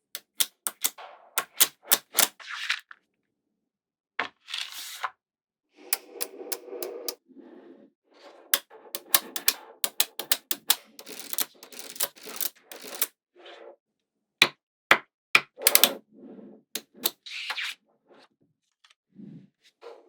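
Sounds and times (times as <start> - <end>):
magnetic balls clicking together: 0.0 - 2.3, 6.0 - 7.2, 9.0 - 13.1, 15.4 - 16.0, 16.8 - 17.1.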